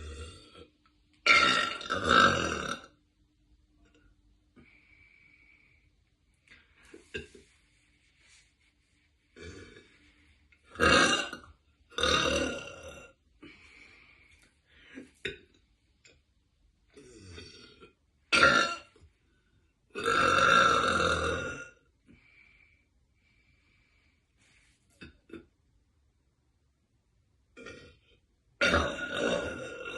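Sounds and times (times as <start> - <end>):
woman burping loudly: 0.0 - 3.0, 10.7 - 13.2, 17.0 - 18.9, 19.9 - 21.8, 27.6 - 29.9.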